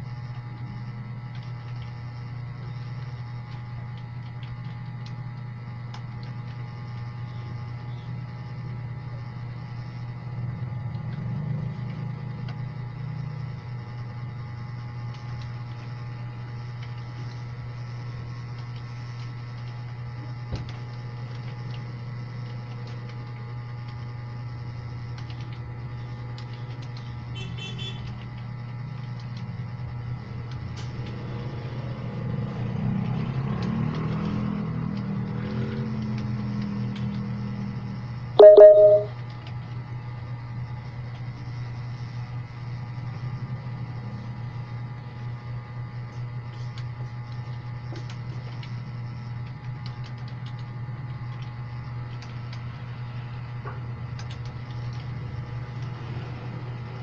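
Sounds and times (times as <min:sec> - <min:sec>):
faint steady tones: 0:38.4 - 0:39.1
short loud beep: 0:38.4 - 0:39.1.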